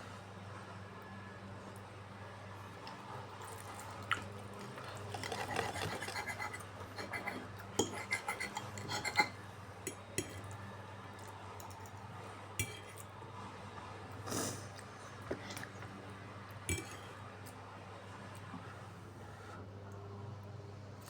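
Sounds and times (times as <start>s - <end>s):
cutlery clinking on a dish: 5.1s - 10.6s, 12.6s - 13.1s, 16.7s - 17.1s.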